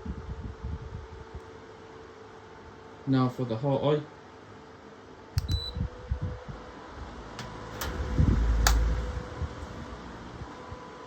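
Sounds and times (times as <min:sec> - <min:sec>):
fan motor hum and rushing air: 0:00.0 - 0:11.0
fan control clicks: 0:05.4 - 0:05.8, 0:07.4 - 0:09.0
wind buffeting microphone: 0:07.8 - 0:10.0.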